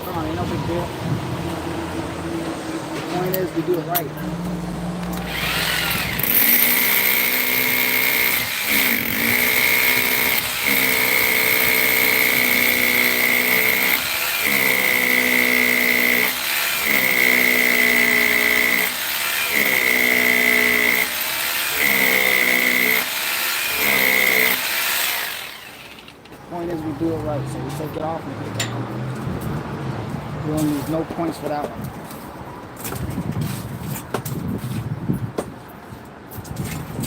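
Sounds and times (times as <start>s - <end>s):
power tool motor whining: 4.5s - 26.3s.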